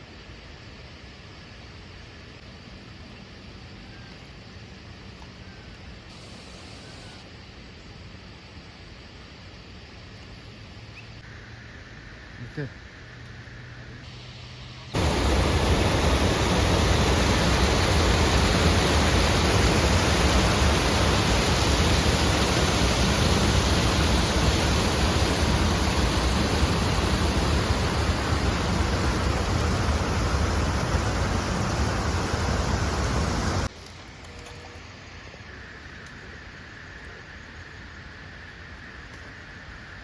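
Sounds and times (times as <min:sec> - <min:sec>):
loud rushing noise with rumble: 0:15.0 - 0:33.7.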